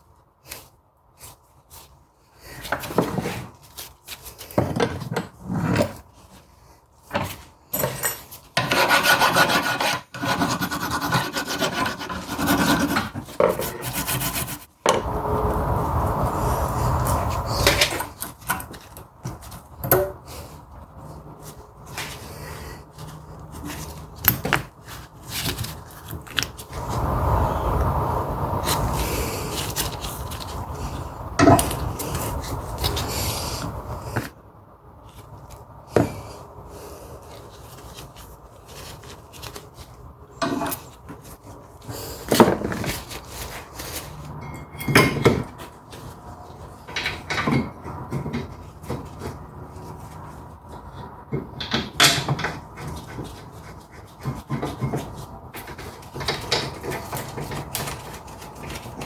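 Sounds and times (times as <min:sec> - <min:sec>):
scrubbing on metal brake parts: 0:08.6 - 0:14.7.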